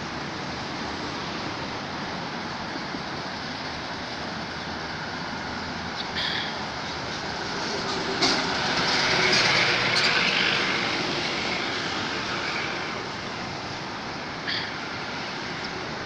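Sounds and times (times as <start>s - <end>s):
vehicle passing by: 5.4s - 16.0s.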